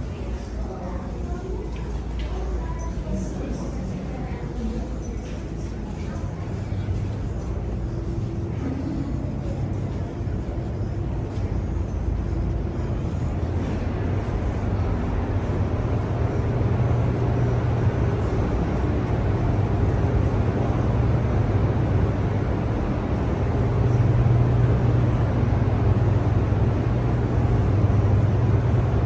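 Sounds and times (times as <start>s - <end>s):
low hum of generators: 0.0s - 29.0s.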